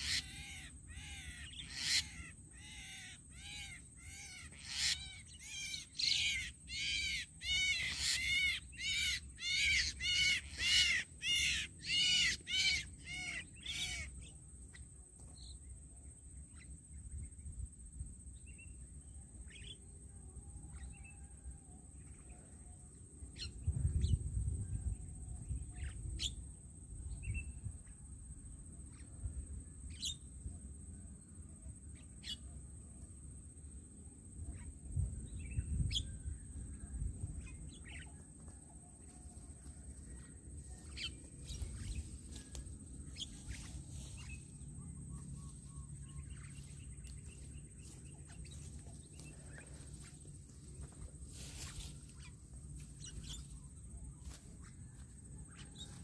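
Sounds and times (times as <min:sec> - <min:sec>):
harsh bird calls: 0:00.0 - 0:14.3.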